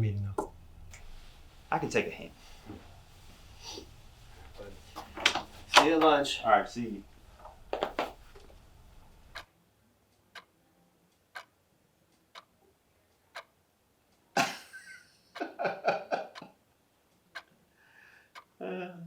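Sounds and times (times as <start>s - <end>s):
clock ticking: 4.0s - 9.5s, 11.1s - 12.6s, 13.2s - 13.6s, 14.2s - 16.5s, 17.3s - 17.5s.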